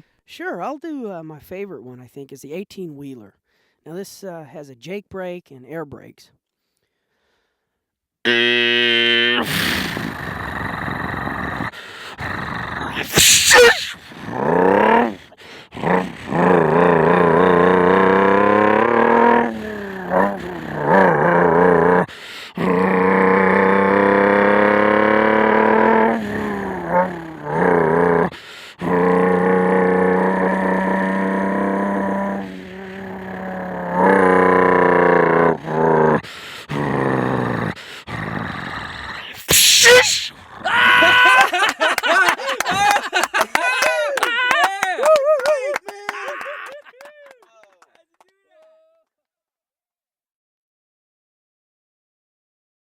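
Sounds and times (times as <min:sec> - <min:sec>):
mouth-made air brake hiss: 0:13.1 - 0:14.0, 0:39.4 - 0:40.3.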